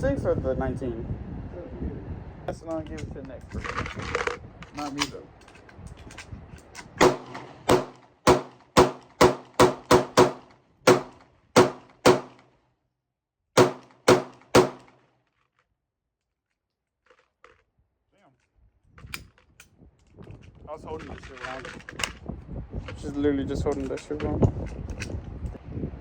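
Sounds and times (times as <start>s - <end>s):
pistol shots: 7.0s - 12.4s, 13.6s - 14.9s.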